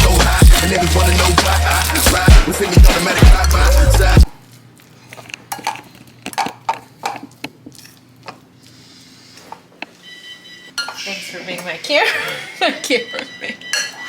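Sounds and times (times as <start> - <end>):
hip-hop music: 0.0 - 4.4
dishes and utensils clinking: 13.6 - 14.0.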